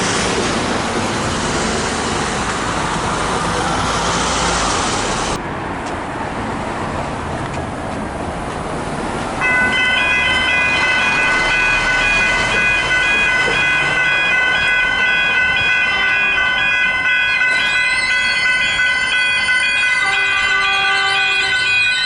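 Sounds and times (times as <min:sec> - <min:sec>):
level crossing warning bells: 0:09.4 - 0:22.0.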